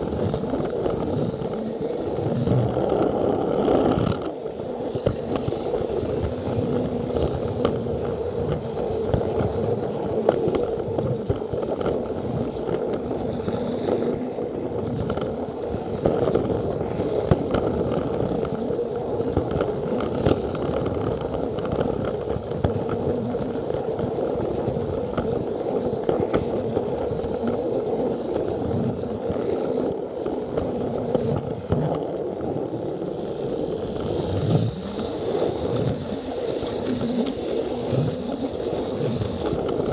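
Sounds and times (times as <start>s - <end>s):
wheels clicking over track joints: 0.0s - 39.9s
toy train motor whirring: 29.5s - 39.9s.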